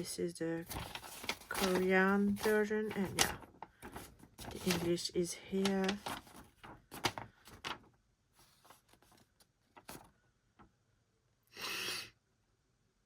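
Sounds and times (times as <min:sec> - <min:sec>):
paper sliding rustle: 0:00.6 - 0:10.1.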